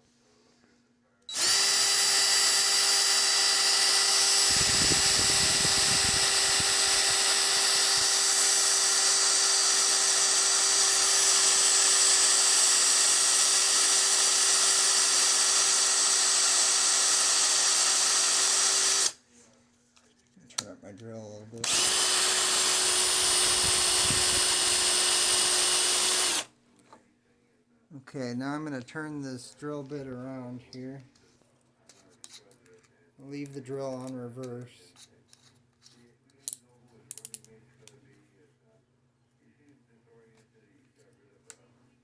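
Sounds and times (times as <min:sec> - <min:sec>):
power drill motor whine: 0:01.3 - 0:19.2, 0:21.6 - 0:26.5.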